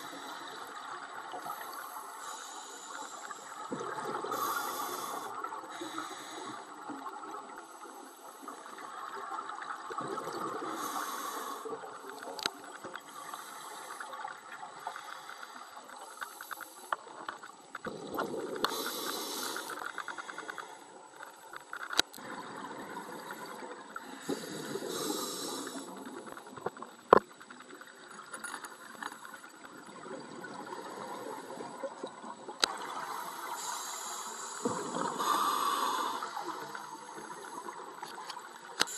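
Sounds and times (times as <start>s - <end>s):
regulator hiss on inhale: 0.0s - 8.7s, 10.6s - 12.4s, 13.1s - 17.2s, 18.5s - 21.6s, 24.0s - 26.5s, 33.0s - 38.2s
rush of bubbles: 3.6s - 5.5s, 8.5s - 12.0s.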